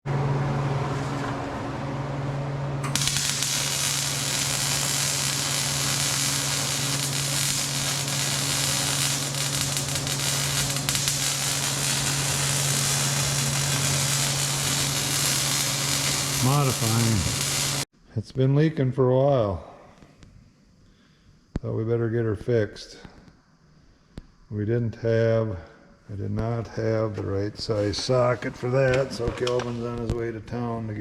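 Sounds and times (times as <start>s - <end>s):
low mechanical hum: 0.1s - 17.9s
loud continuous hiss: 2.8s - 18.6s.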